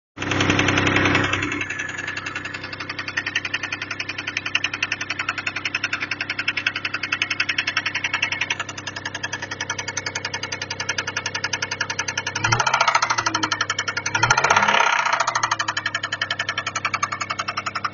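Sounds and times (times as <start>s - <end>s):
engine running with rapid knocking: 0.2s - 17.9s.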